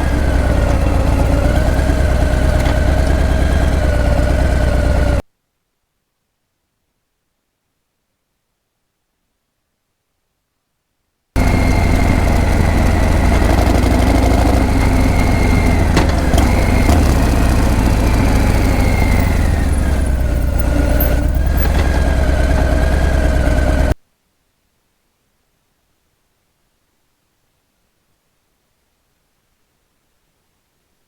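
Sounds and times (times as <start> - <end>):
motorcycle engine idling: 0.0 - 5.2, 11.4 - 24.0.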